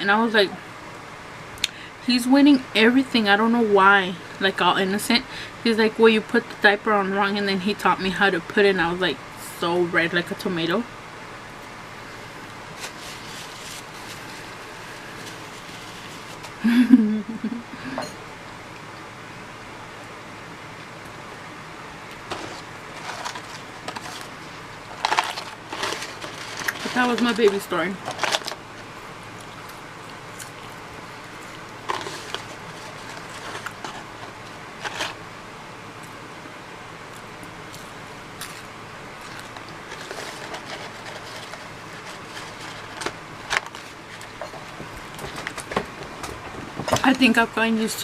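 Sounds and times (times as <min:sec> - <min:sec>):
electric fan hissing: 0:00.0 - 0:48.0
crunchy eating noise: 0:11.5 - 0:16.6, 0:22.0 - 0:36.3, 0:37.0 - 0:47.1.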